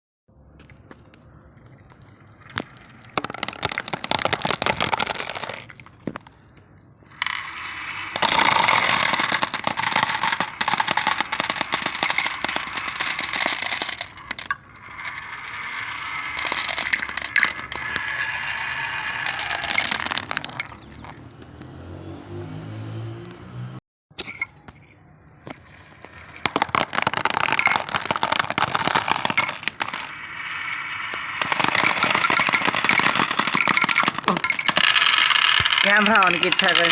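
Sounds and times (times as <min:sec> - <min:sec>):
marbles rattling down wooden run: 0:02.5 - 0:06.4, 0:07.1 - 0:21.6, 0:26.0 - 0:36.9.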